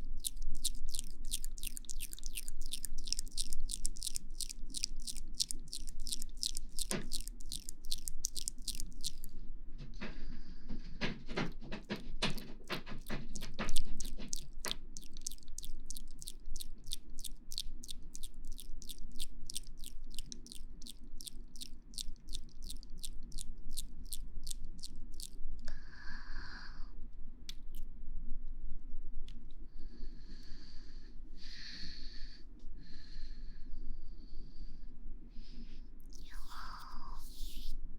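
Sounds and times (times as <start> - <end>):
crisp wet clicks: 0.0 - 9.3, 11.4 - 25.4, 36.1 - 36.7.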